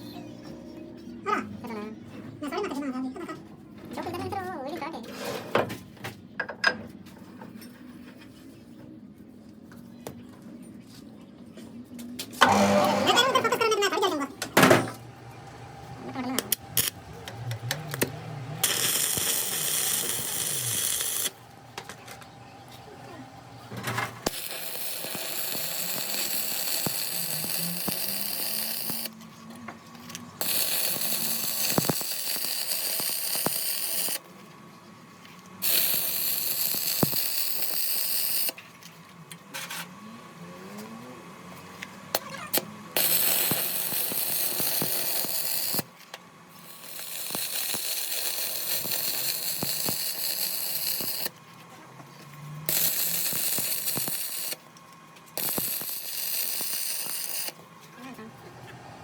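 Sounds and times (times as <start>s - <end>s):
metal grinding hiss: 14.0s - 29.2s, 30.0s - 34.2s, 35.6s - 38.6s, 42.1s - 45.9s, 46.5s - 51.4s, 52.4s - 54.6s, 55.3s - 57.6s.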